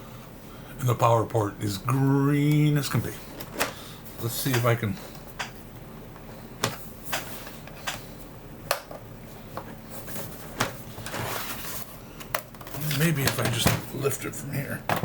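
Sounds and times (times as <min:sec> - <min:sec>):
scraping rustle: 0:09.9 - 0:12.0.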